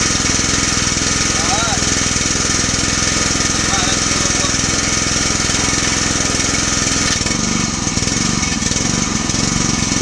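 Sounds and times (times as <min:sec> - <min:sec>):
pressure washer engine running: 0:00.0 - 0:10.0.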